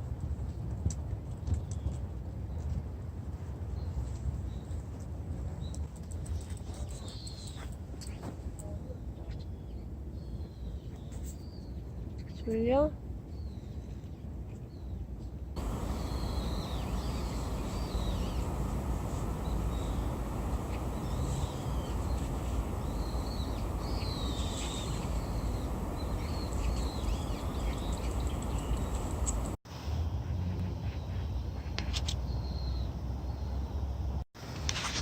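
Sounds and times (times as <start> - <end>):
birds chirping: 15.6 - 29.6
low rumble background noise: 15.6 - 30.2.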